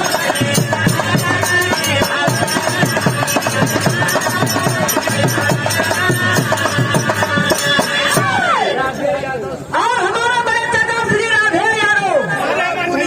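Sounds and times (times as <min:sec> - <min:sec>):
quick steady drum beats: 0:00.0 - 0:08.6.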